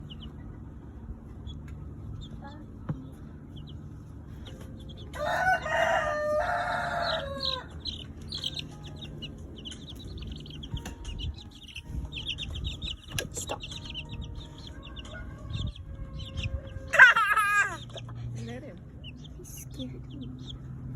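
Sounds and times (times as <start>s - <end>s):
chicks peeping: 0.0s - 20.9s
harsh chicken call: 15.6s - 18.0s.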